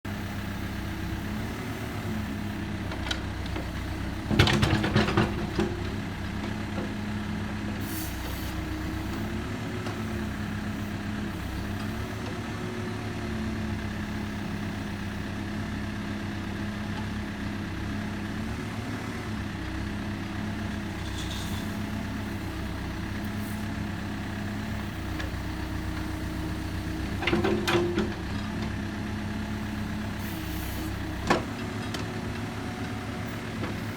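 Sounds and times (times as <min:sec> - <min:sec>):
backhoe engine running: 0:00.1 - 0:33.9.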